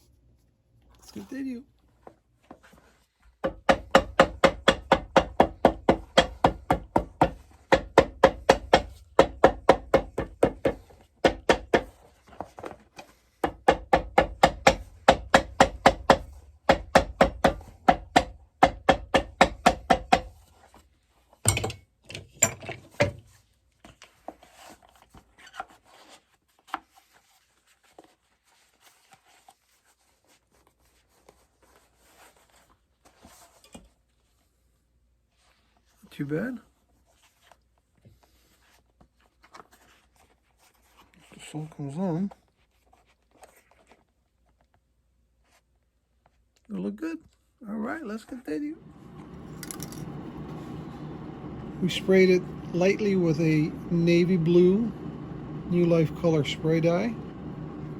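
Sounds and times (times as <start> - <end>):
machine motor hum: 48.8 - 57.9.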